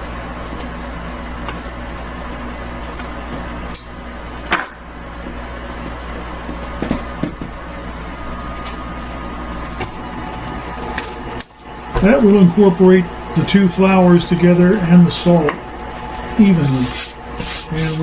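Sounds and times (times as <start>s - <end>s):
stand mixer motor running: 9.5s - 18.0s.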